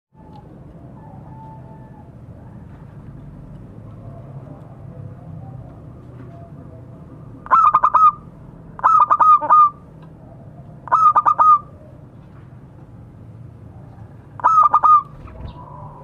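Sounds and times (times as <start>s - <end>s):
dove cooing: 0.2s - 2.6s, 7.4s - 8.2s, 8.8s - 12.2s, 13.6s - 16.0s.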